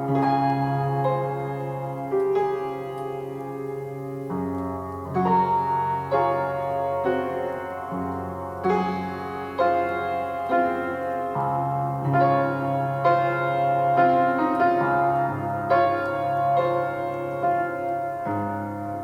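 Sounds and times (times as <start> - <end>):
gentle piano music: 0.0 - 19.0.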